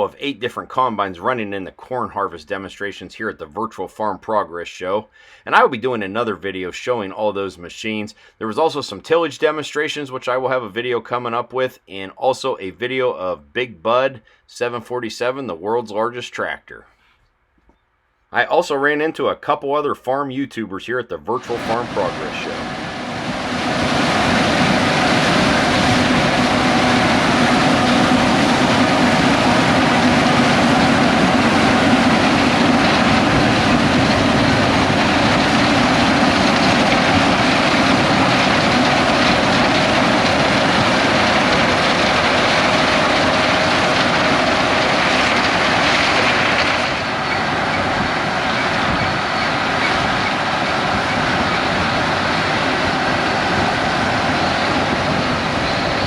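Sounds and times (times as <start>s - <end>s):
combine harvester running: 21.3s - 56.0s.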